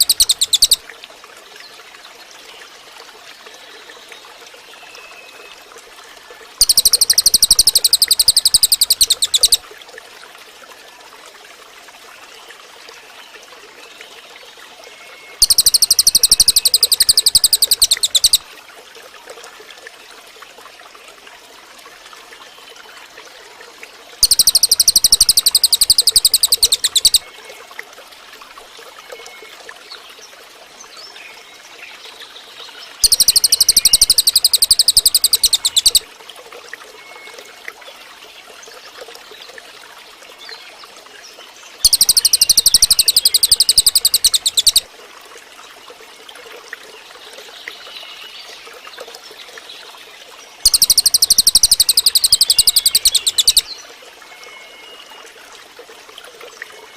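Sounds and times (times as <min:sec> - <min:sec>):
bird fast high trill: 0:00.0 - 0:00.8, 0:06.6 - 0:09.6, 0:15.4 - 0:18.4, 0:24.2 - 0:27.2, 0:33.0 - 0:36.0, 0:41.8 - 0:44.8, 0:50.6 - 0:53.6.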